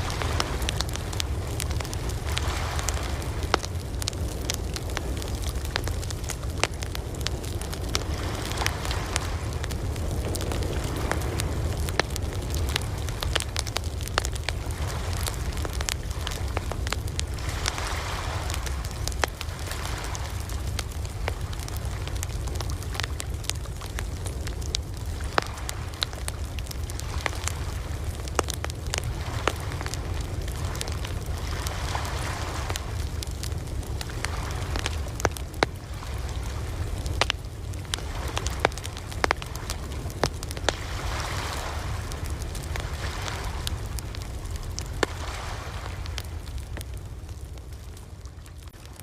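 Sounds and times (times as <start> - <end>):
ocean waves washing in: 0.0 - 6.1, 29.0 - 46.6
campfire crackling and popping: 0.0 - 49.0.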